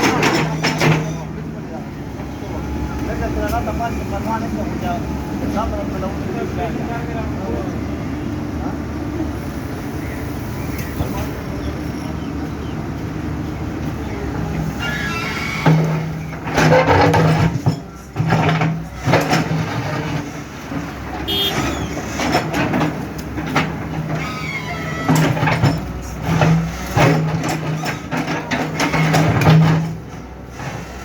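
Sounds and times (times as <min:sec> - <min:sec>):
excavator engine hum: 0:00.0 - 0:31.0
bucket knocking and clanking: 0:15.7 - 0:20.2.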